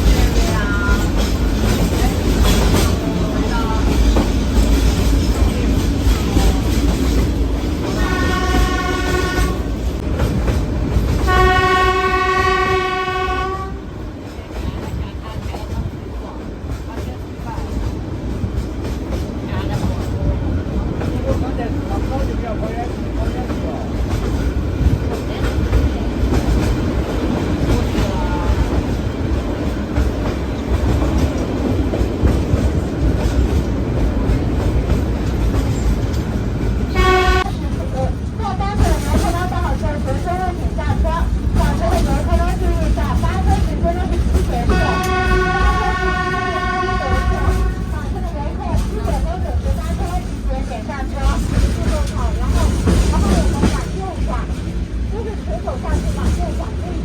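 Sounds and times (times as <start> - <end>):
train rumbling: 0.0 - 57.0
train horn blasts: 7.9 - 9.9, 11.2 - 13.9, 36.9 - 37.6, 44.7 - 48.0.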